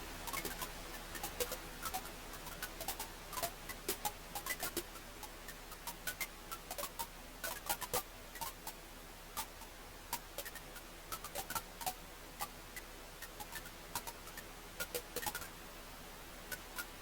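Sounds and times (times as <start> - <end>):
soft steady hiss: 0.0 - 17.0.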